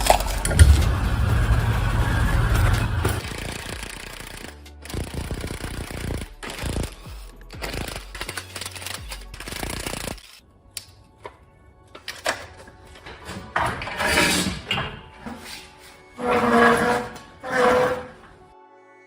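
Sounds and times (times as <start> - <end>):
background music: 0.0 - 19.0
rapid rattling hammering tool: 3.1 - 10.3.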